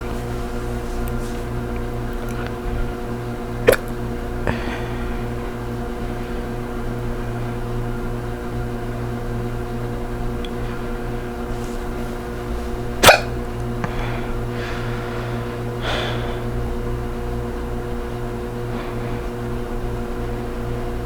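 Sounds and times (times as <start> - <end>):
steady low hum: 0.0 - 21.0
woman hiccupping: 3.6 - 4.8, 13.0 - 13.8.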